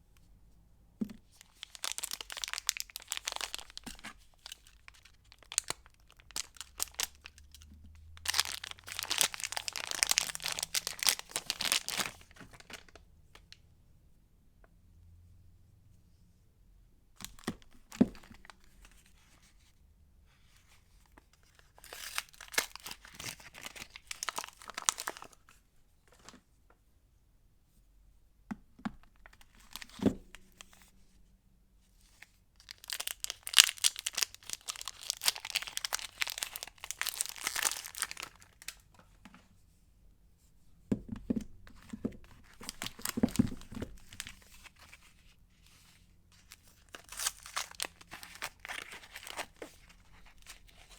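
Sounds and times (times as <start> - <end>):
soap wrapping crinkling: 1.2 - 13.0, 21.4 - 25.5, 29.1 - 30.9, 32.2 - 39.1, 41.0 - 50.9.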